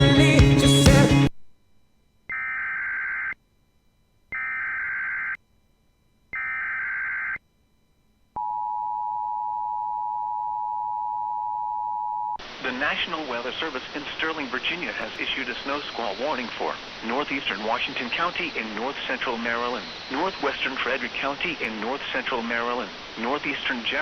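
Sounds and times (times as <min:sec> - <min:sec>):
alert data bursts: 0:02.3 - 0:03.4, 0:04.3 - 0:05.4, 0:06.3 - 0:07.4, 0:14.0 - 0:24.0.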